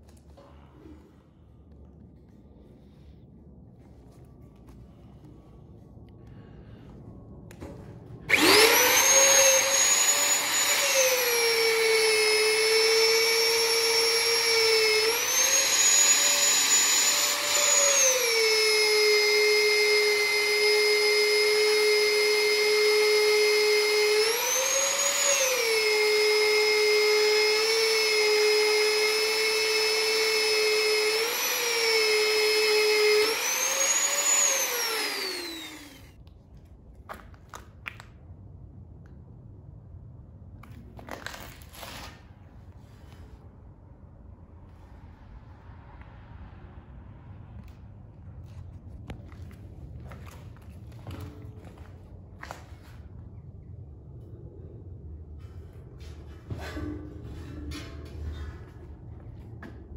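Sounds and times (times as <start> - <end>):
angle grinder whining: 8.3 - 36.2.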